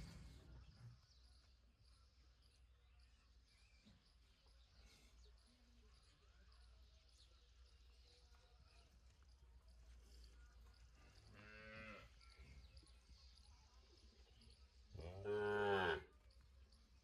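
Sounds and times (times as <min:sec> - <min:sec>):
cow mooing: 0:15.0 - 0:16.0.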